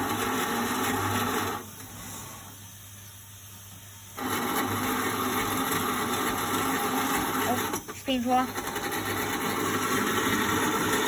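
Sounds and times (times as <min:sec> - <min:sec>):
small electric motor humming: 0:04.2 - 0:11.0.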